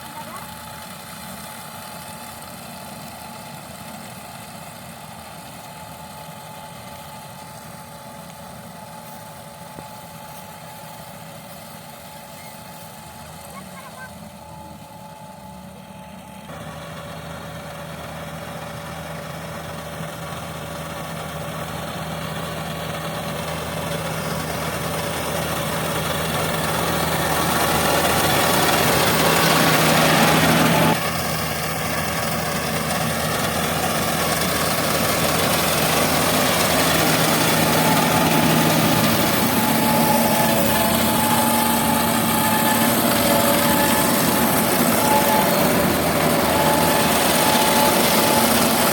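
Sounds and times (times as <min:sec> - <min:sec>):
combine harvester engine running: 0:00.0 - 0:48.9.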